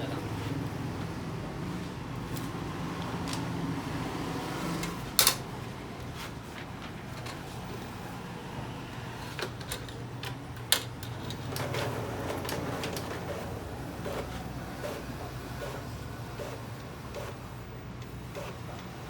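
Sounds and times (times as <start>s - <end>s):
printer motor whir: 0.4s - 19.0s
printer sharp clicks: 4.8s - 5.5s
printer ticks: 18.0s - 19.0s.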